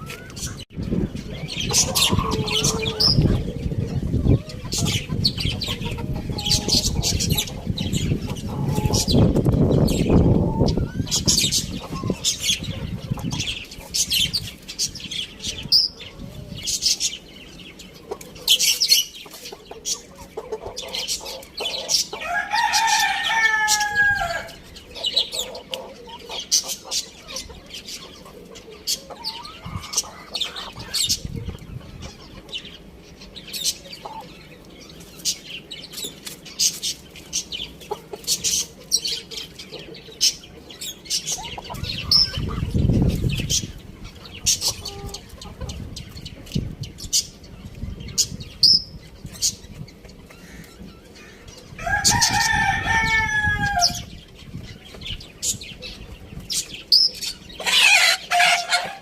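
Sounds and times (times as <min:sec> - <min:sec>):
chickens clucking: 0:00.0 - 0:59.0
rooster crowing: 0:22.2 - 0:24.6, 0:51.8 - 0:54.1.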